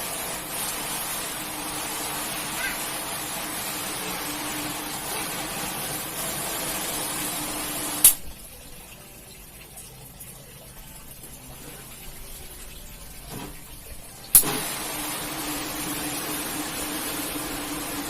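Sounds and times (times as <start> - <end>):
pressure washer spray hissing: 0.0 - 8.2
motor hum: 0.0 - 8.6
faint water noise: 1.9 - 14.5
sharp click: 8.0 - 8.3.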